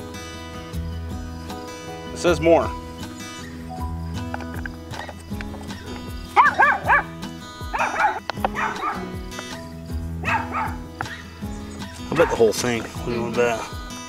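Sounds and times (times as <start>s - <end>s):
guitar music: 0.0s - 14.0s
dog barking: 6.4s - 7.1s, 7.7s - 9.1s, 10.2s - 10.8s, 12.1s - 12.5s.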